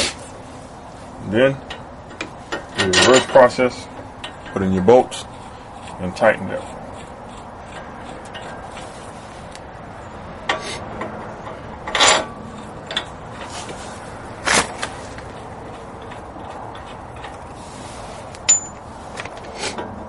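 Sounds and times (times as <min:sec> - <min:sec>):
quiet metal rubbing: 0:00.0 - 0:20.0
tools and bolts clinking on metal: 0:01.6 - 0:05.0, 0:10.4 - 0:13.5, 0:18.4 - 0:20.0
sharp metal clanks: 0:01.8 - 0:03.5, 0:18.4 - 0:18.9.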